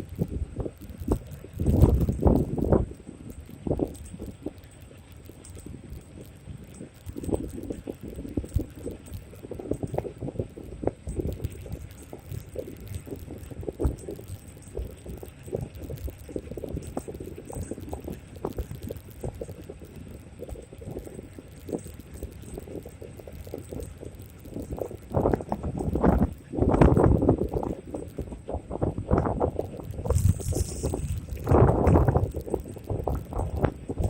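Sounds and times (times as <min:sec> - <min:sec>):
wind on microphone: 0:00.0 - 0:34.0.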